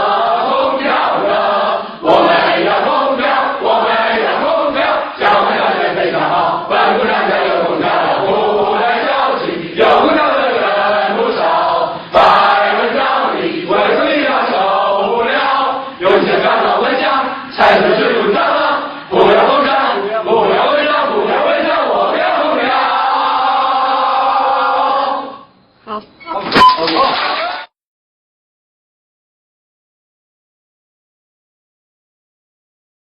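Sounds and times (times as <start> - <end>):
crowd chanting a song: 0.0 - 25.5.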